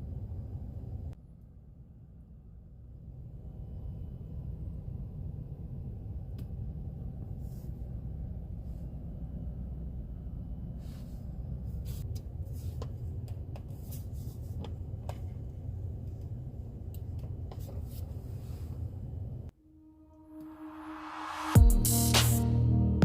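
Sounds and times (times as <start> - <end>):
steady low rumble: 0.0 - 20.1.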